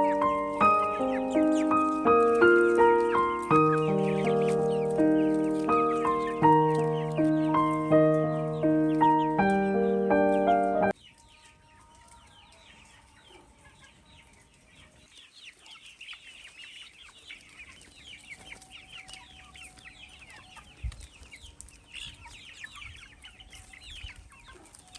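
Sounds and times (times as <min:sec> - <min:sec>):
chicks peeping: 0:00.0 - 0:24.9.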